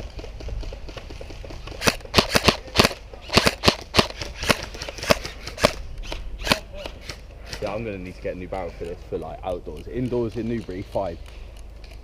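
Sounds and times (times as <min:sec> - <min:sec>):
airsoft gun shots: 0:01.7 - 0:07.8.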